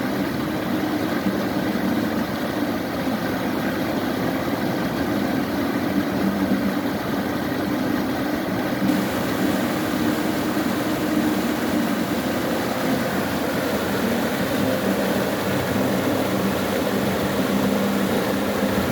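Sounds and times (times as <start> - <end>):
stream flowing: 0.0 - 18.9.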